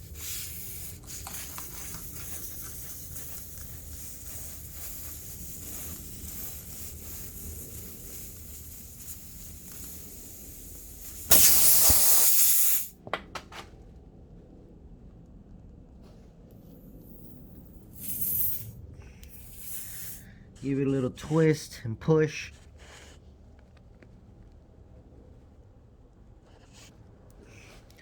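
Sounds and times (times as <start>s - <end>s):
loud hiss: 0.0s - 13.0s, 17.9s - 20.2s
faint steady hiss: 0.0s - 13.2s, 13.8s - 28.0s.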